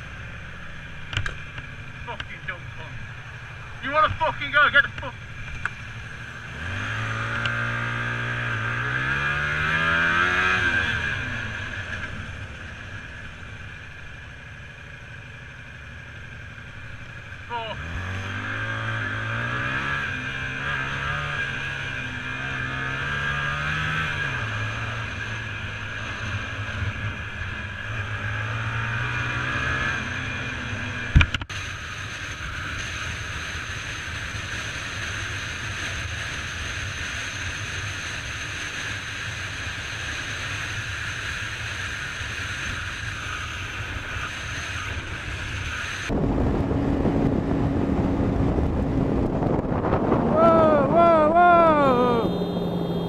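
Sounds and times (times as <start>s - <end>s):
road noise: 0.0s - 53.0s
vehicle engine revving: 3.8s - 12.2s, 17.5s - 27.0s, 46.0s - 53.0s
wind buffeting microphone: 46.1s - 50.9s.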